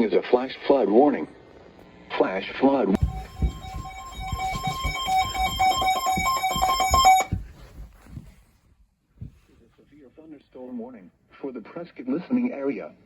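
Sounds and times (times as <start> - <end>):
two-pitch electronic alarm tone: 3.0 - 7.4
low thumps: 3.0 - 7.7.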